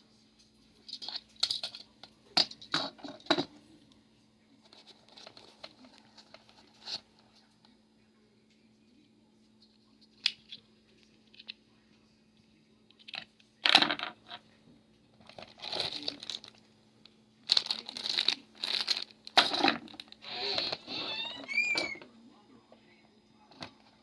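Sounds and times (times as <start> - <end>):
tool kit rustling and crinkling: 17.5 - 20.8.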